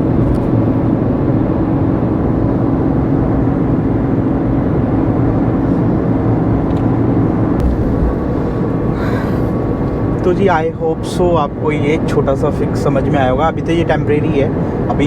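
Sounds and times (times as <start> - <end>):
wind noise inside car: 0.0 - 11.4
road rumble: 5.2 - 12.1
low hum: 7.6 - 10.5.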